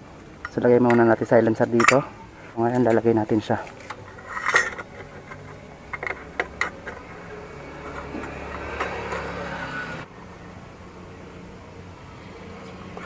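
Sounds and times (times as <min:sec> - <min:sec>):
metallic clinks and knocks: 0:00.4 - 0:09.4.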